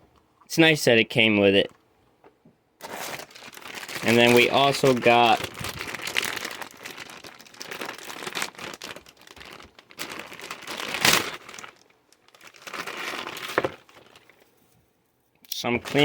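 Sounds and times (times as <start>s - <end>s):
plastic packaging crinkling: 2.8s - 14.6s, 15.8s - 16.0s.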